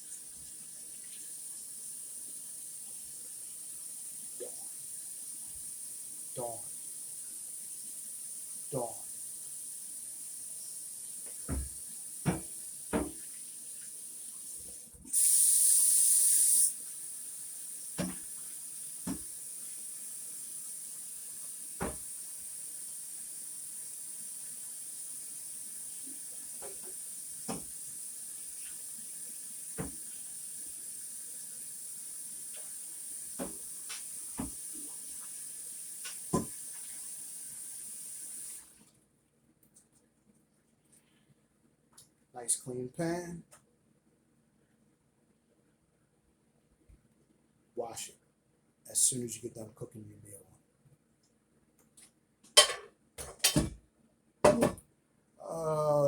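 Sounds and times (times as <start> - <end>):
faucet running into sink: 0.0 - 38.8
pan knocking against sink: 11.5 - 13.2, 54.5 - 54.8.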